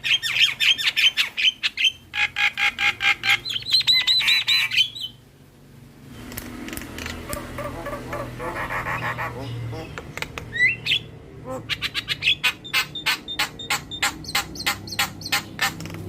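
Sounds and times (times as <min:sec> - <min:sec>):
bird chatter: 0:11.7 - 0:16.0.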